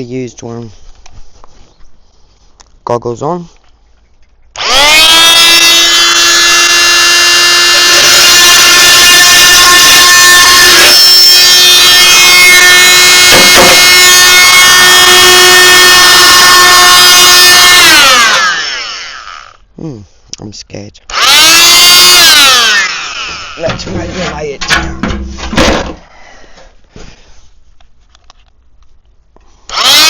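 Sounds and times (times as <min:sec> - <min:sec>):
power tool motor whining: 0:04.6 - 0:19.6, 0:21.1 - 0:23.8, 0:29.7 - 0:30.0.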